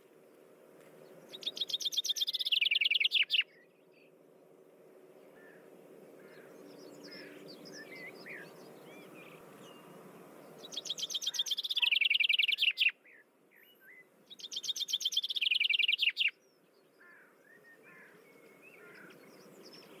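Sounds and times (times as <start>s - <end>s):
songbirds chirping: 0.0s - 20.0s
bird singing a fast trill: 1.3s - 3.8s, 10.6s - 16.6s.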